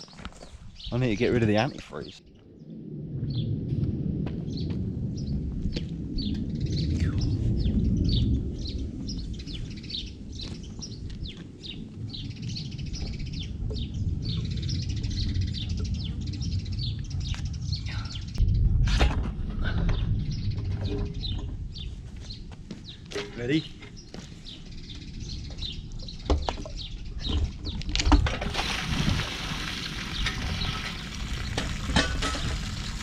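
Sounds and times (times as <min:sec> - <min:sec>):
small birds chirping: 0:00.0 - 0:02.7, 0:04.5 - 0:18.6, 0:19.8 - 0:28.2, 0:30.0 - 0:31.7
loud low rumble: 0:02.6 - 0:10.4, 0:12.8 - 0:22.0.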